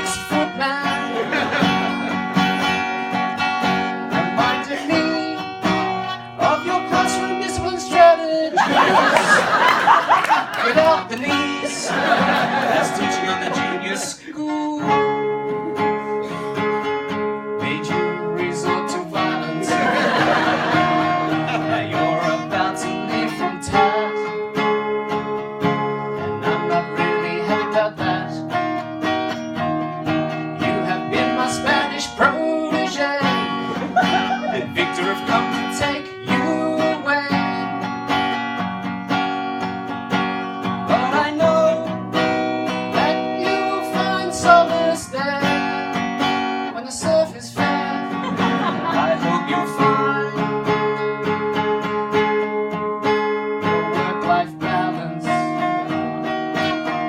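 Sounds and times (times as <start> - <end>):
person singing: 0.0 - 2.8, 4.1 - 9.0, 10.2 - 16.9, 17.6 - 24.6, 30.6 - 37.8, 40.8 - 45.8, 46.7 - 55.9
acoustic guitar chords: 0.0 - 57.0.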